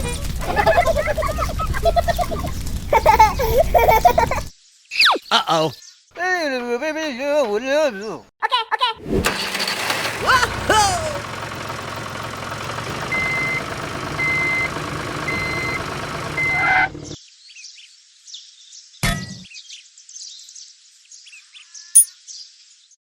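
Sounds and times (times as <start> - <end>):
truck engine running: 9.1 - 17.2
reversing alarm beeping: 13.0 - 16.9
faint bird chirping: 16.4 - 23.0.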